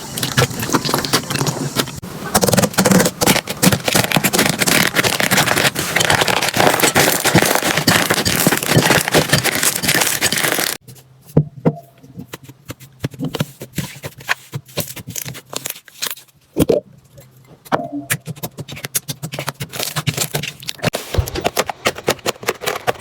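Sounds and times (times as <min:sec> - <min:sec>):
slime crackling and popping: 0:02.4 - 0:10.8.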